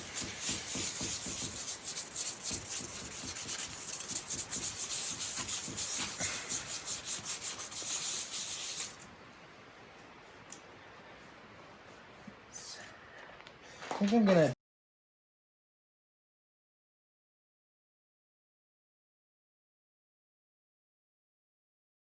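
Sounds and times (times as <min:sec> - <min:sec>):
sandpaper rubbing on metal: 0:00.0 - 0:09.0.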